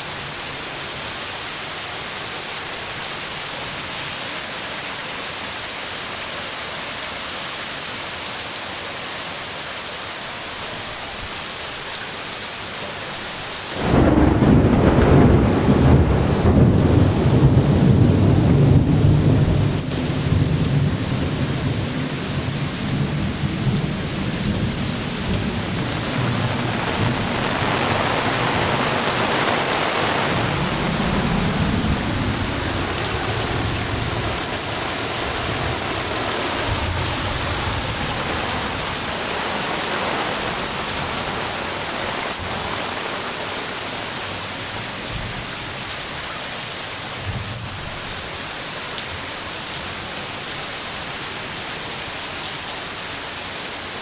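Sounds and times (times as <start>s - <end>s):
steady rain hissing: 0.0s - 54.0s
thunder rumbling: 13.8s - 39.3s.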